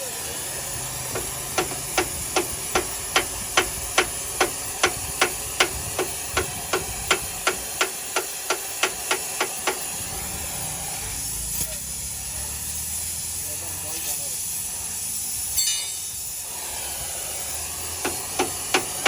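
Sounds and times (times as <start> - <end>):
steady hiss: 0.0 - 19.0
hammer striking metal: 15.6 - 16.3.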